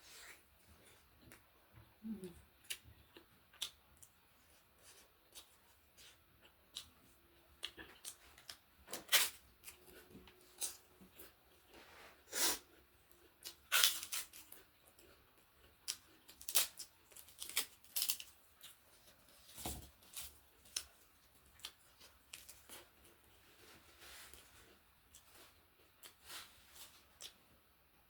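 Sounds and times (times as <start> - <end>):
crunchy chewing: 2.6 - 11.7, 12.6 - 27.4.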